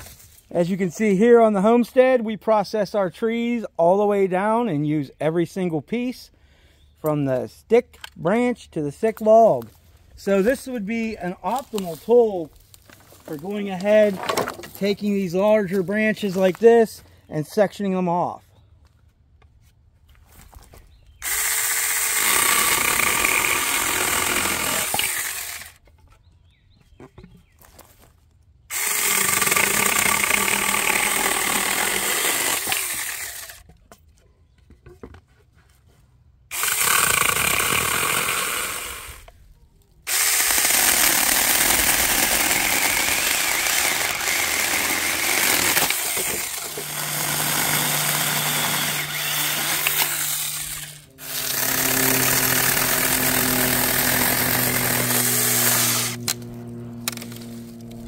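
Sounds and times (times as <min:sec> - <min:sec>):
electric chainsaw cutting branches: 0:21.2 - 0:25.8, 0:28.7 - 0:33.7, 0:36.5 - 0:39.3, 0:40.1 - 0:58.0.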